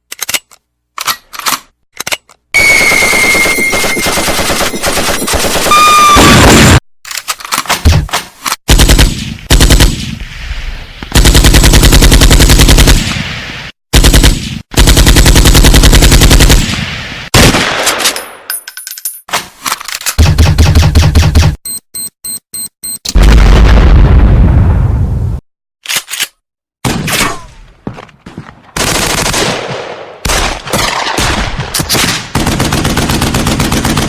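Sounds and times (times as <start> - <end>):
automatic gunfire bursts: 8.7 - 10.0, 11.2 - 13.0, 14.0 - 16.7, 28.8 - 31.2.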